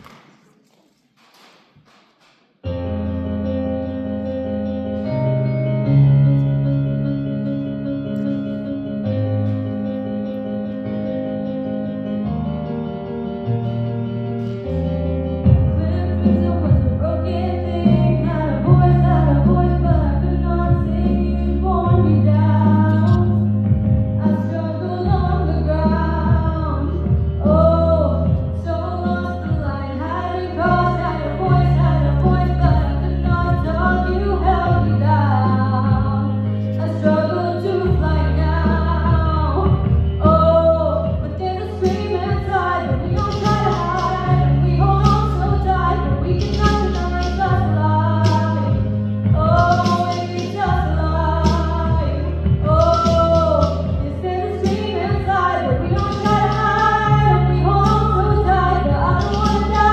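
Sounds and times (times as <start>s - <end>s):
piano accompaniment: 2.6s - 59.9s
woman singing pop song: 15.6s - 59.9s.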